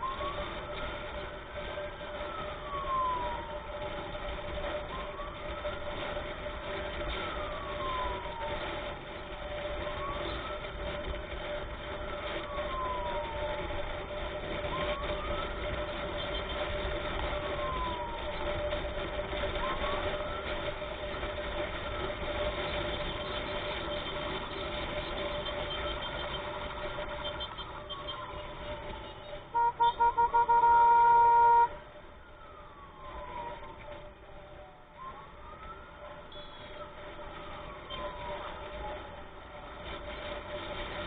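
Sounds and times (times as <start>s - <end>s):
emergency siren wailing: 0.0s - 41.0s
road and wind noise: 0.0s - 41.0s.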